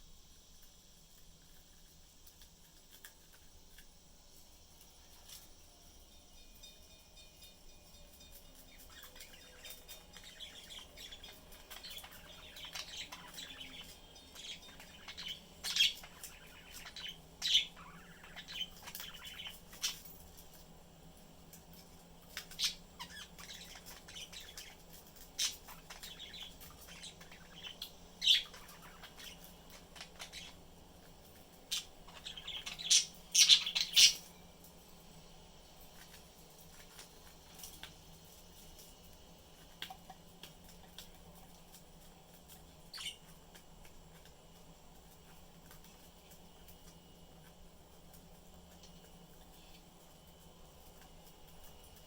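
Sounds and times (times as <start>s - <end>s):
budgerigars chirping and warbling: 8.8s - 20.1s, 22.4s - 30.8s, 31.6s - 34.3s, 42.9s - 43.6s.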